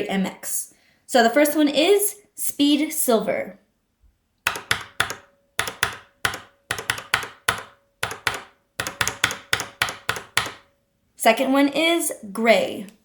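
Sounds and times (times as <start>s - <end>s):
mechanical keyboard switch clacking: 4.5s - 10.7s.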